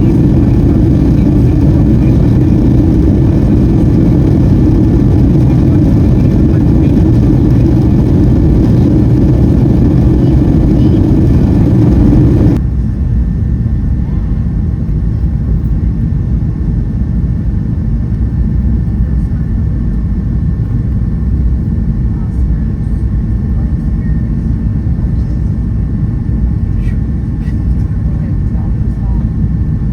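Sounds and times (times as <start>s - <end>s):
airplane cabin rumble: 0.0s - 29.9s
airplane engine roar: 0.0s - 29.9s.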